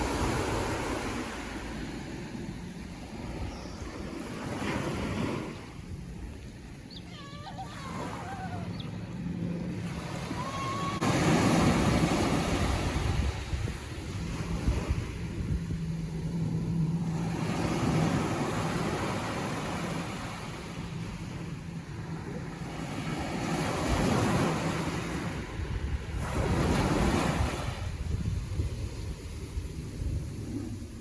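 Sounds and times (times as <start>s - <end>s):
ocean surf breaking: 0.0s - 31.0s.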